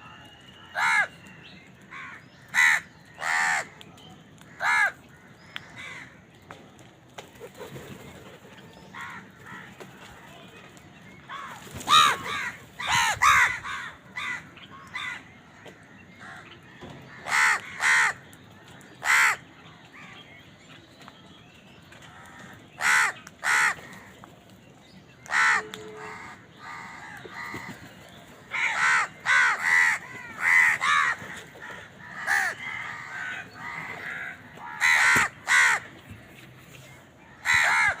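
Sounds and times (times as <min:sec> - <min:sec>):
crows cawing: 0:00.7 - 0:01.2, 0:01.8 - 0:03.8, 0:04.4 - 0:06.2, 0:08.9 - 0:09.9, 0:11.3 - 0:19.4, 0:22.1 - 0:24.3, 0:25.2 - 0:27.9, 0:28.5 - 0:36.0, 0:37.3 - 0:38.0.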